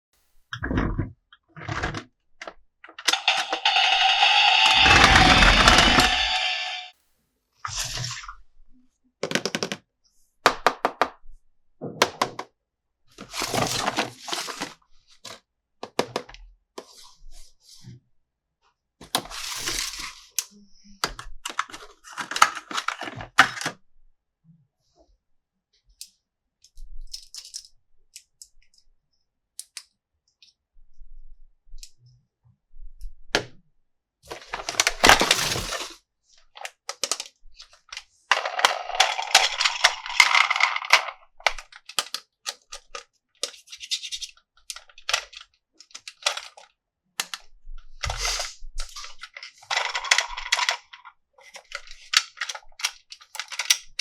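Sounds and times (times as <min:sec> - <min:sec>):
plastic pieces clicking: 0:03.0 - 0:06.9, 0:27.1 - 0:28.8, 0:36.6 - 0:47.4, 0:49.0 - 0:54.0
packaging crinkling: 0:38.3 - 0:41.7.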